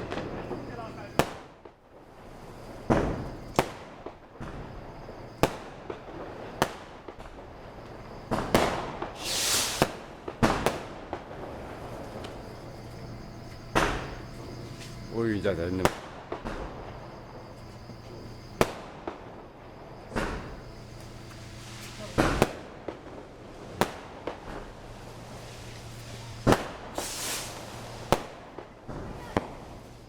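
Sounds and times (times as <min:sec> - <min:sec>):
firecracker bangs: 0:00.0 - 0:30.0
hissing whoosh: 0:09.1 - 0:10.0, 0:24.7 - 0:28.3.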